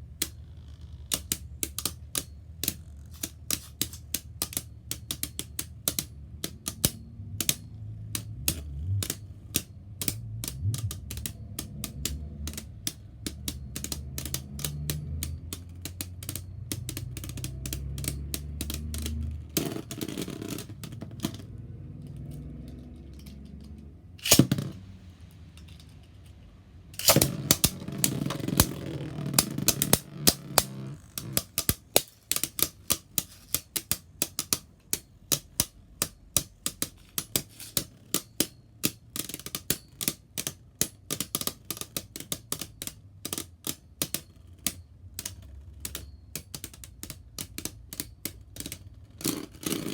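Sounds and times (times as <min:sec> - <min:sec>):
spinning tops clicking and clacking: 0:01.0 - 0:49.9
spinning tops rattling: 0:07.7 - 0:35.6
loud hit of spinning tops: 0:24.2 - 0:25.1, 0:27.0 - 0:33.7.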